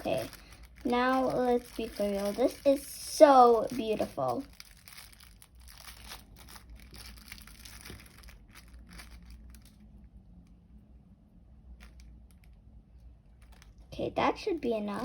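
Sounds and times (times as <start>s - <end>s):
slime crinkling: 0.0s - 10.4s, 11.6s - 15.0s.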